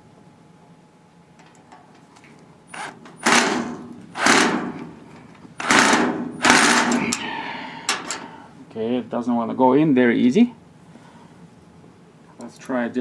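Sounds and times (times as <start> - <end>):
cordless screwdriver driving screw: 2.7 - 4.9, 5.6 - 7.1.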